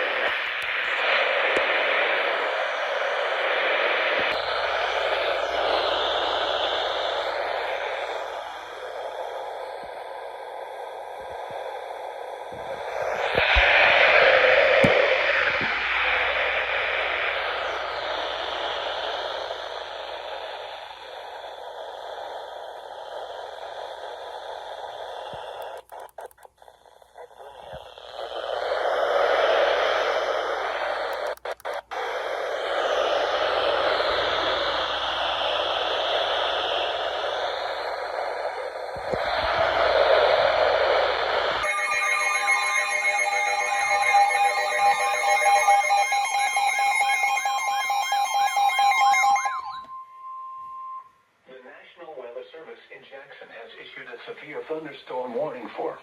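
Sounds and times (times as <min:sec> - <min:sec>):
radio static hiss: 0:00.0 - 0:49.9, 0:51.4 - 0:56.0
electronic alert tones: 0:41.6 - 0:51.0.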